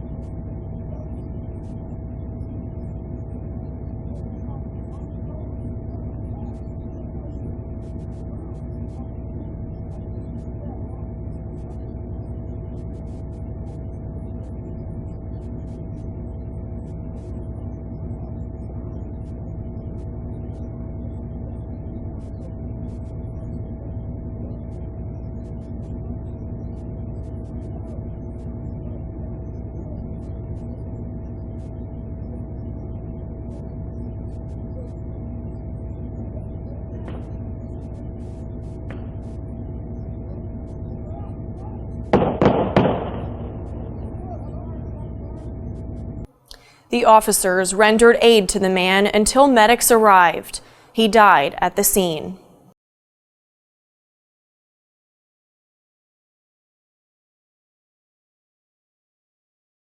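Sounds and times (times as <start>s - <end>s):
low rumble: 0.0s - 46.3s
mid-pitched hum: 0.0s - 52.8s.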